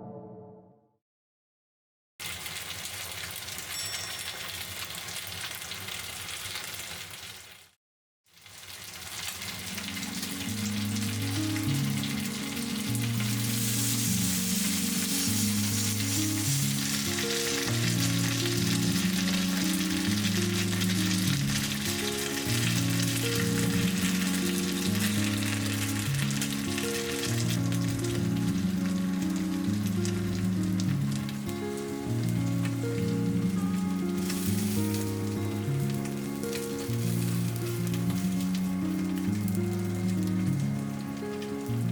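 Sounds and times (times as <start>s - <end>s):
food sizzling on grill: 2.2s - 41.9s.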